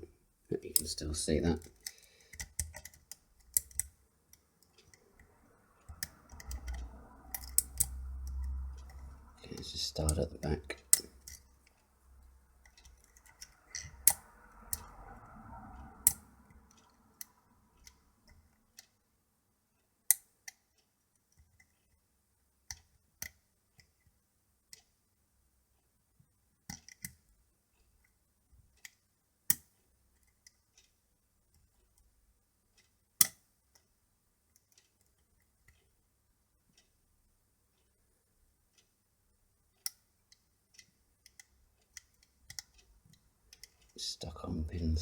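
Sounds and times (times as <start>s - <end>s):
lock picks clicking: 1.5s - 5.3s, 5.9s - 11.5s, 12.7s - 14.9s, 40.8s - 42.8s.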